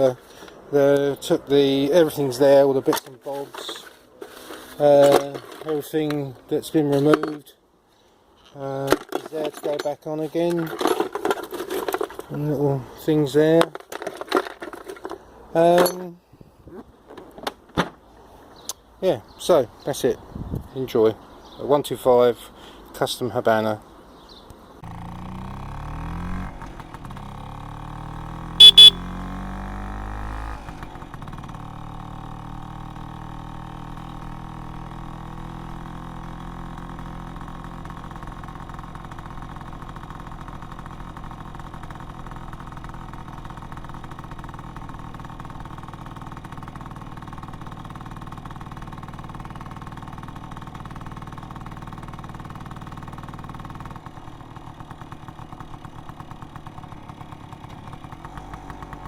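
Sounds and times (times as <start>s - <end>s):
scooter engine running: 24.8s - 59.0s
scooter horn beeps: 28.6s - 29.1s.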